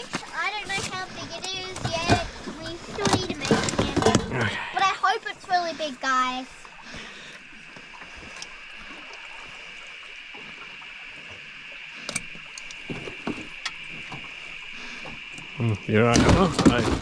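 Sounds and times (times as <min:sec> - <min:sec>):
steady high-pitched hum: 0:00.0 - 0:17.0
water sloshing and splashing: 0:00.0 - 0:17.0.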